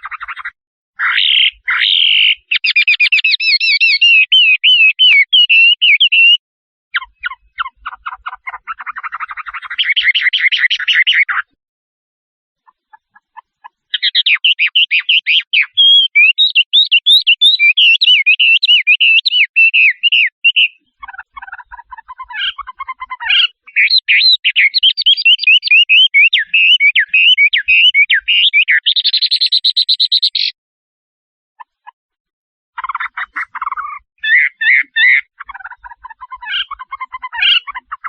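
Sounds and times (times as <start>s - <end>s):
shrike singing: 1.2s - 6.4s, 13.9s - 20.8s.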